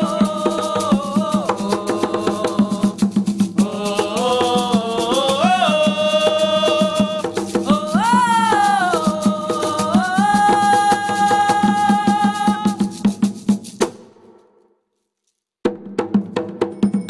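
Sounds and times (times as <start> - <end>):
voices singing a chant: 0.0 - 13.2
hand drums beating: 0.0 - 14.1, 15.7 - 17.0.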